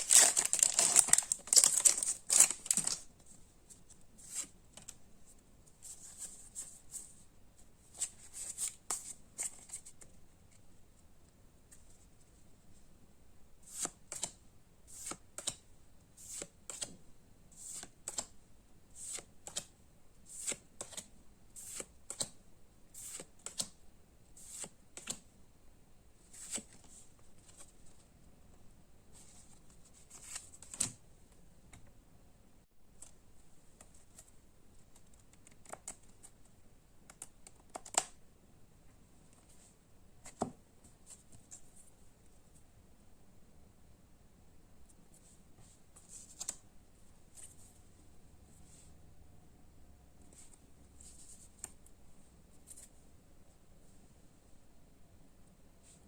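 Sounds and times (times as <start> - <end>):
trading cards clicking and rustling: 0.0 - 3.1.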